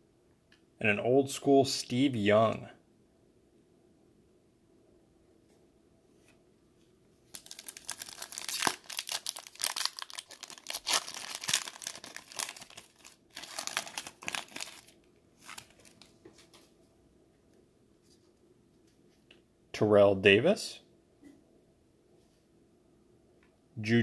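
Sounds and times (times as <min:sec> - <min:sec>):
foil wrapper tearing and crinkling: 0:07.3 - 0:16.1.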